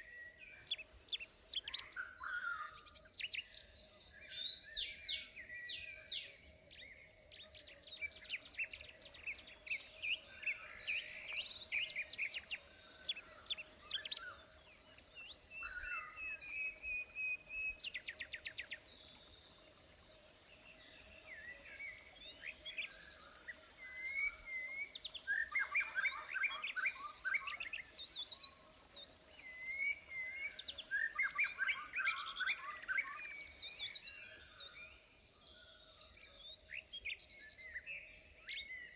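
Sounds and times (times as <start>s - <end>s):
birds chirping and singing: 0.5s - 38.9s.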